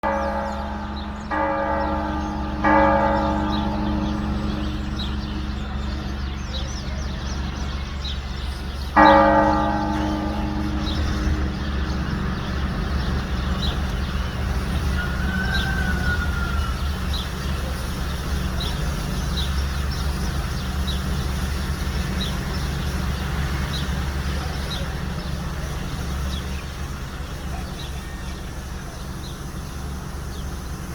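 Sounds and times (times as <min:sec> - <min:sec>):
steady low hum: 0:00.0 - 0:14.8
church bell ringing: 0:00.0 - 0:17.9.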